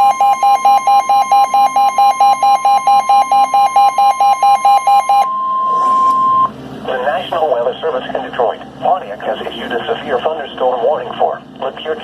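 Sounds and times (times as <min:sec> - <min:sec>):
buzzy pulsing alert beep: 0:00.0 - 0:06.6
steady alarm tone: 0:00.0 - 0:06.6.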